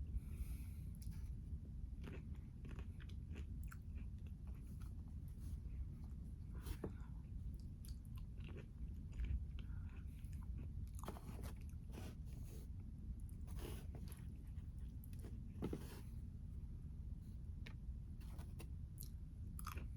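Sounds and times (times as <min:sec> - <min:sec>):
low steady hum: 0:00.0 - 0:19.9
person chewing and biting food: 0:02.0 - 0:04.9, 0:07.6 - 0:11.9, 0:19.0 - 0:19.9.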